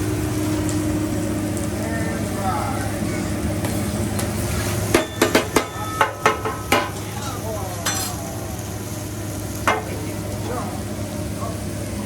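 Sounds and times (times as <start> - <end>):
food sizzling on griddle: 0.0 - 12.0
metal spatulas clacking on griddle: 4.9 - 8.2, 9.7 - 10.0.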